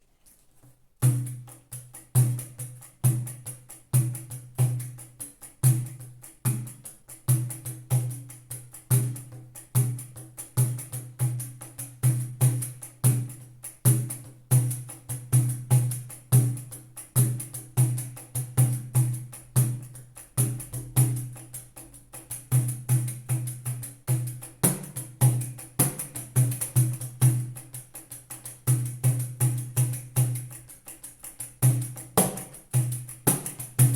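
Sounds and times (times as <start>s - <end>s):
pandeiro drum strokes: 22.5s - 33.9s.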